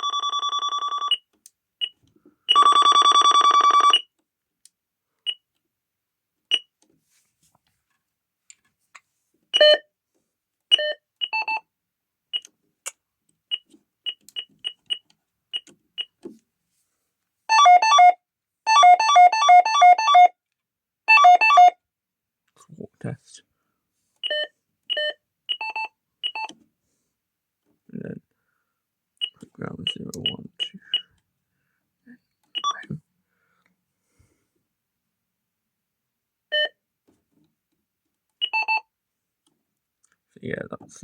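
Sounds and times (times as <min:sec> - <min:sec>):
keypress beeps: 0:24.2 - 0:26.5.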